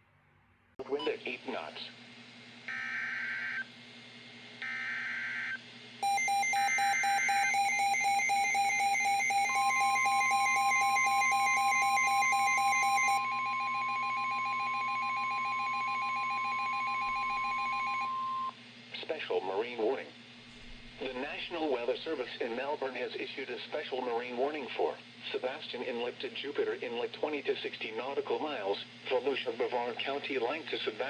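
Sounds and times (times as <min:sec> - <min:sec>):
fast-pulsing alarm beep: 0:04.7 - 0:18.5
warbling data tones: 0:06.0 - 0:13.3
steady warning tone: 0:06.0 - 0:18.5.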